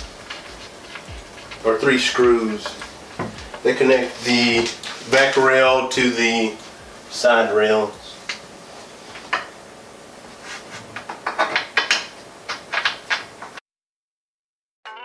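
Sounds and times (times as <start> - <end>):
crib parts clicking and knocking: 11.0 - 13.6.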